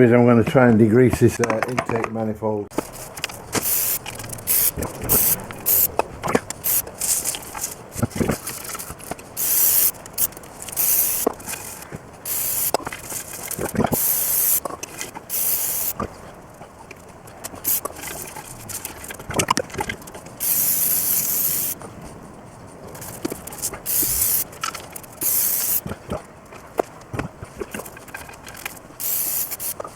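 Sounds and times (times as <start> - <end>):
handling knocks and clicks: 0.4 - 15.3, 23.0 - 29.9
aerosol spray hissing: 3.6 - 7.4, 9.4 - 12.8, 14.0 - 14.6, 15.3 - 16.0, 17.6 - 17.9, 20.4 - 21.8, 23.0 - 24.5, 25.2 - 25.8, 29.0 - 29.8.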